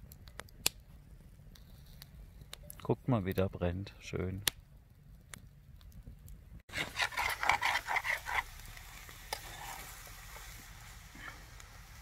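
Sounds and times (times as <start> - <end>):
eggs and bacon sizzling: 6.6 - 12.0
spatula scraping frying pan: 6.7 - 8.6, 9.3 - 10.5.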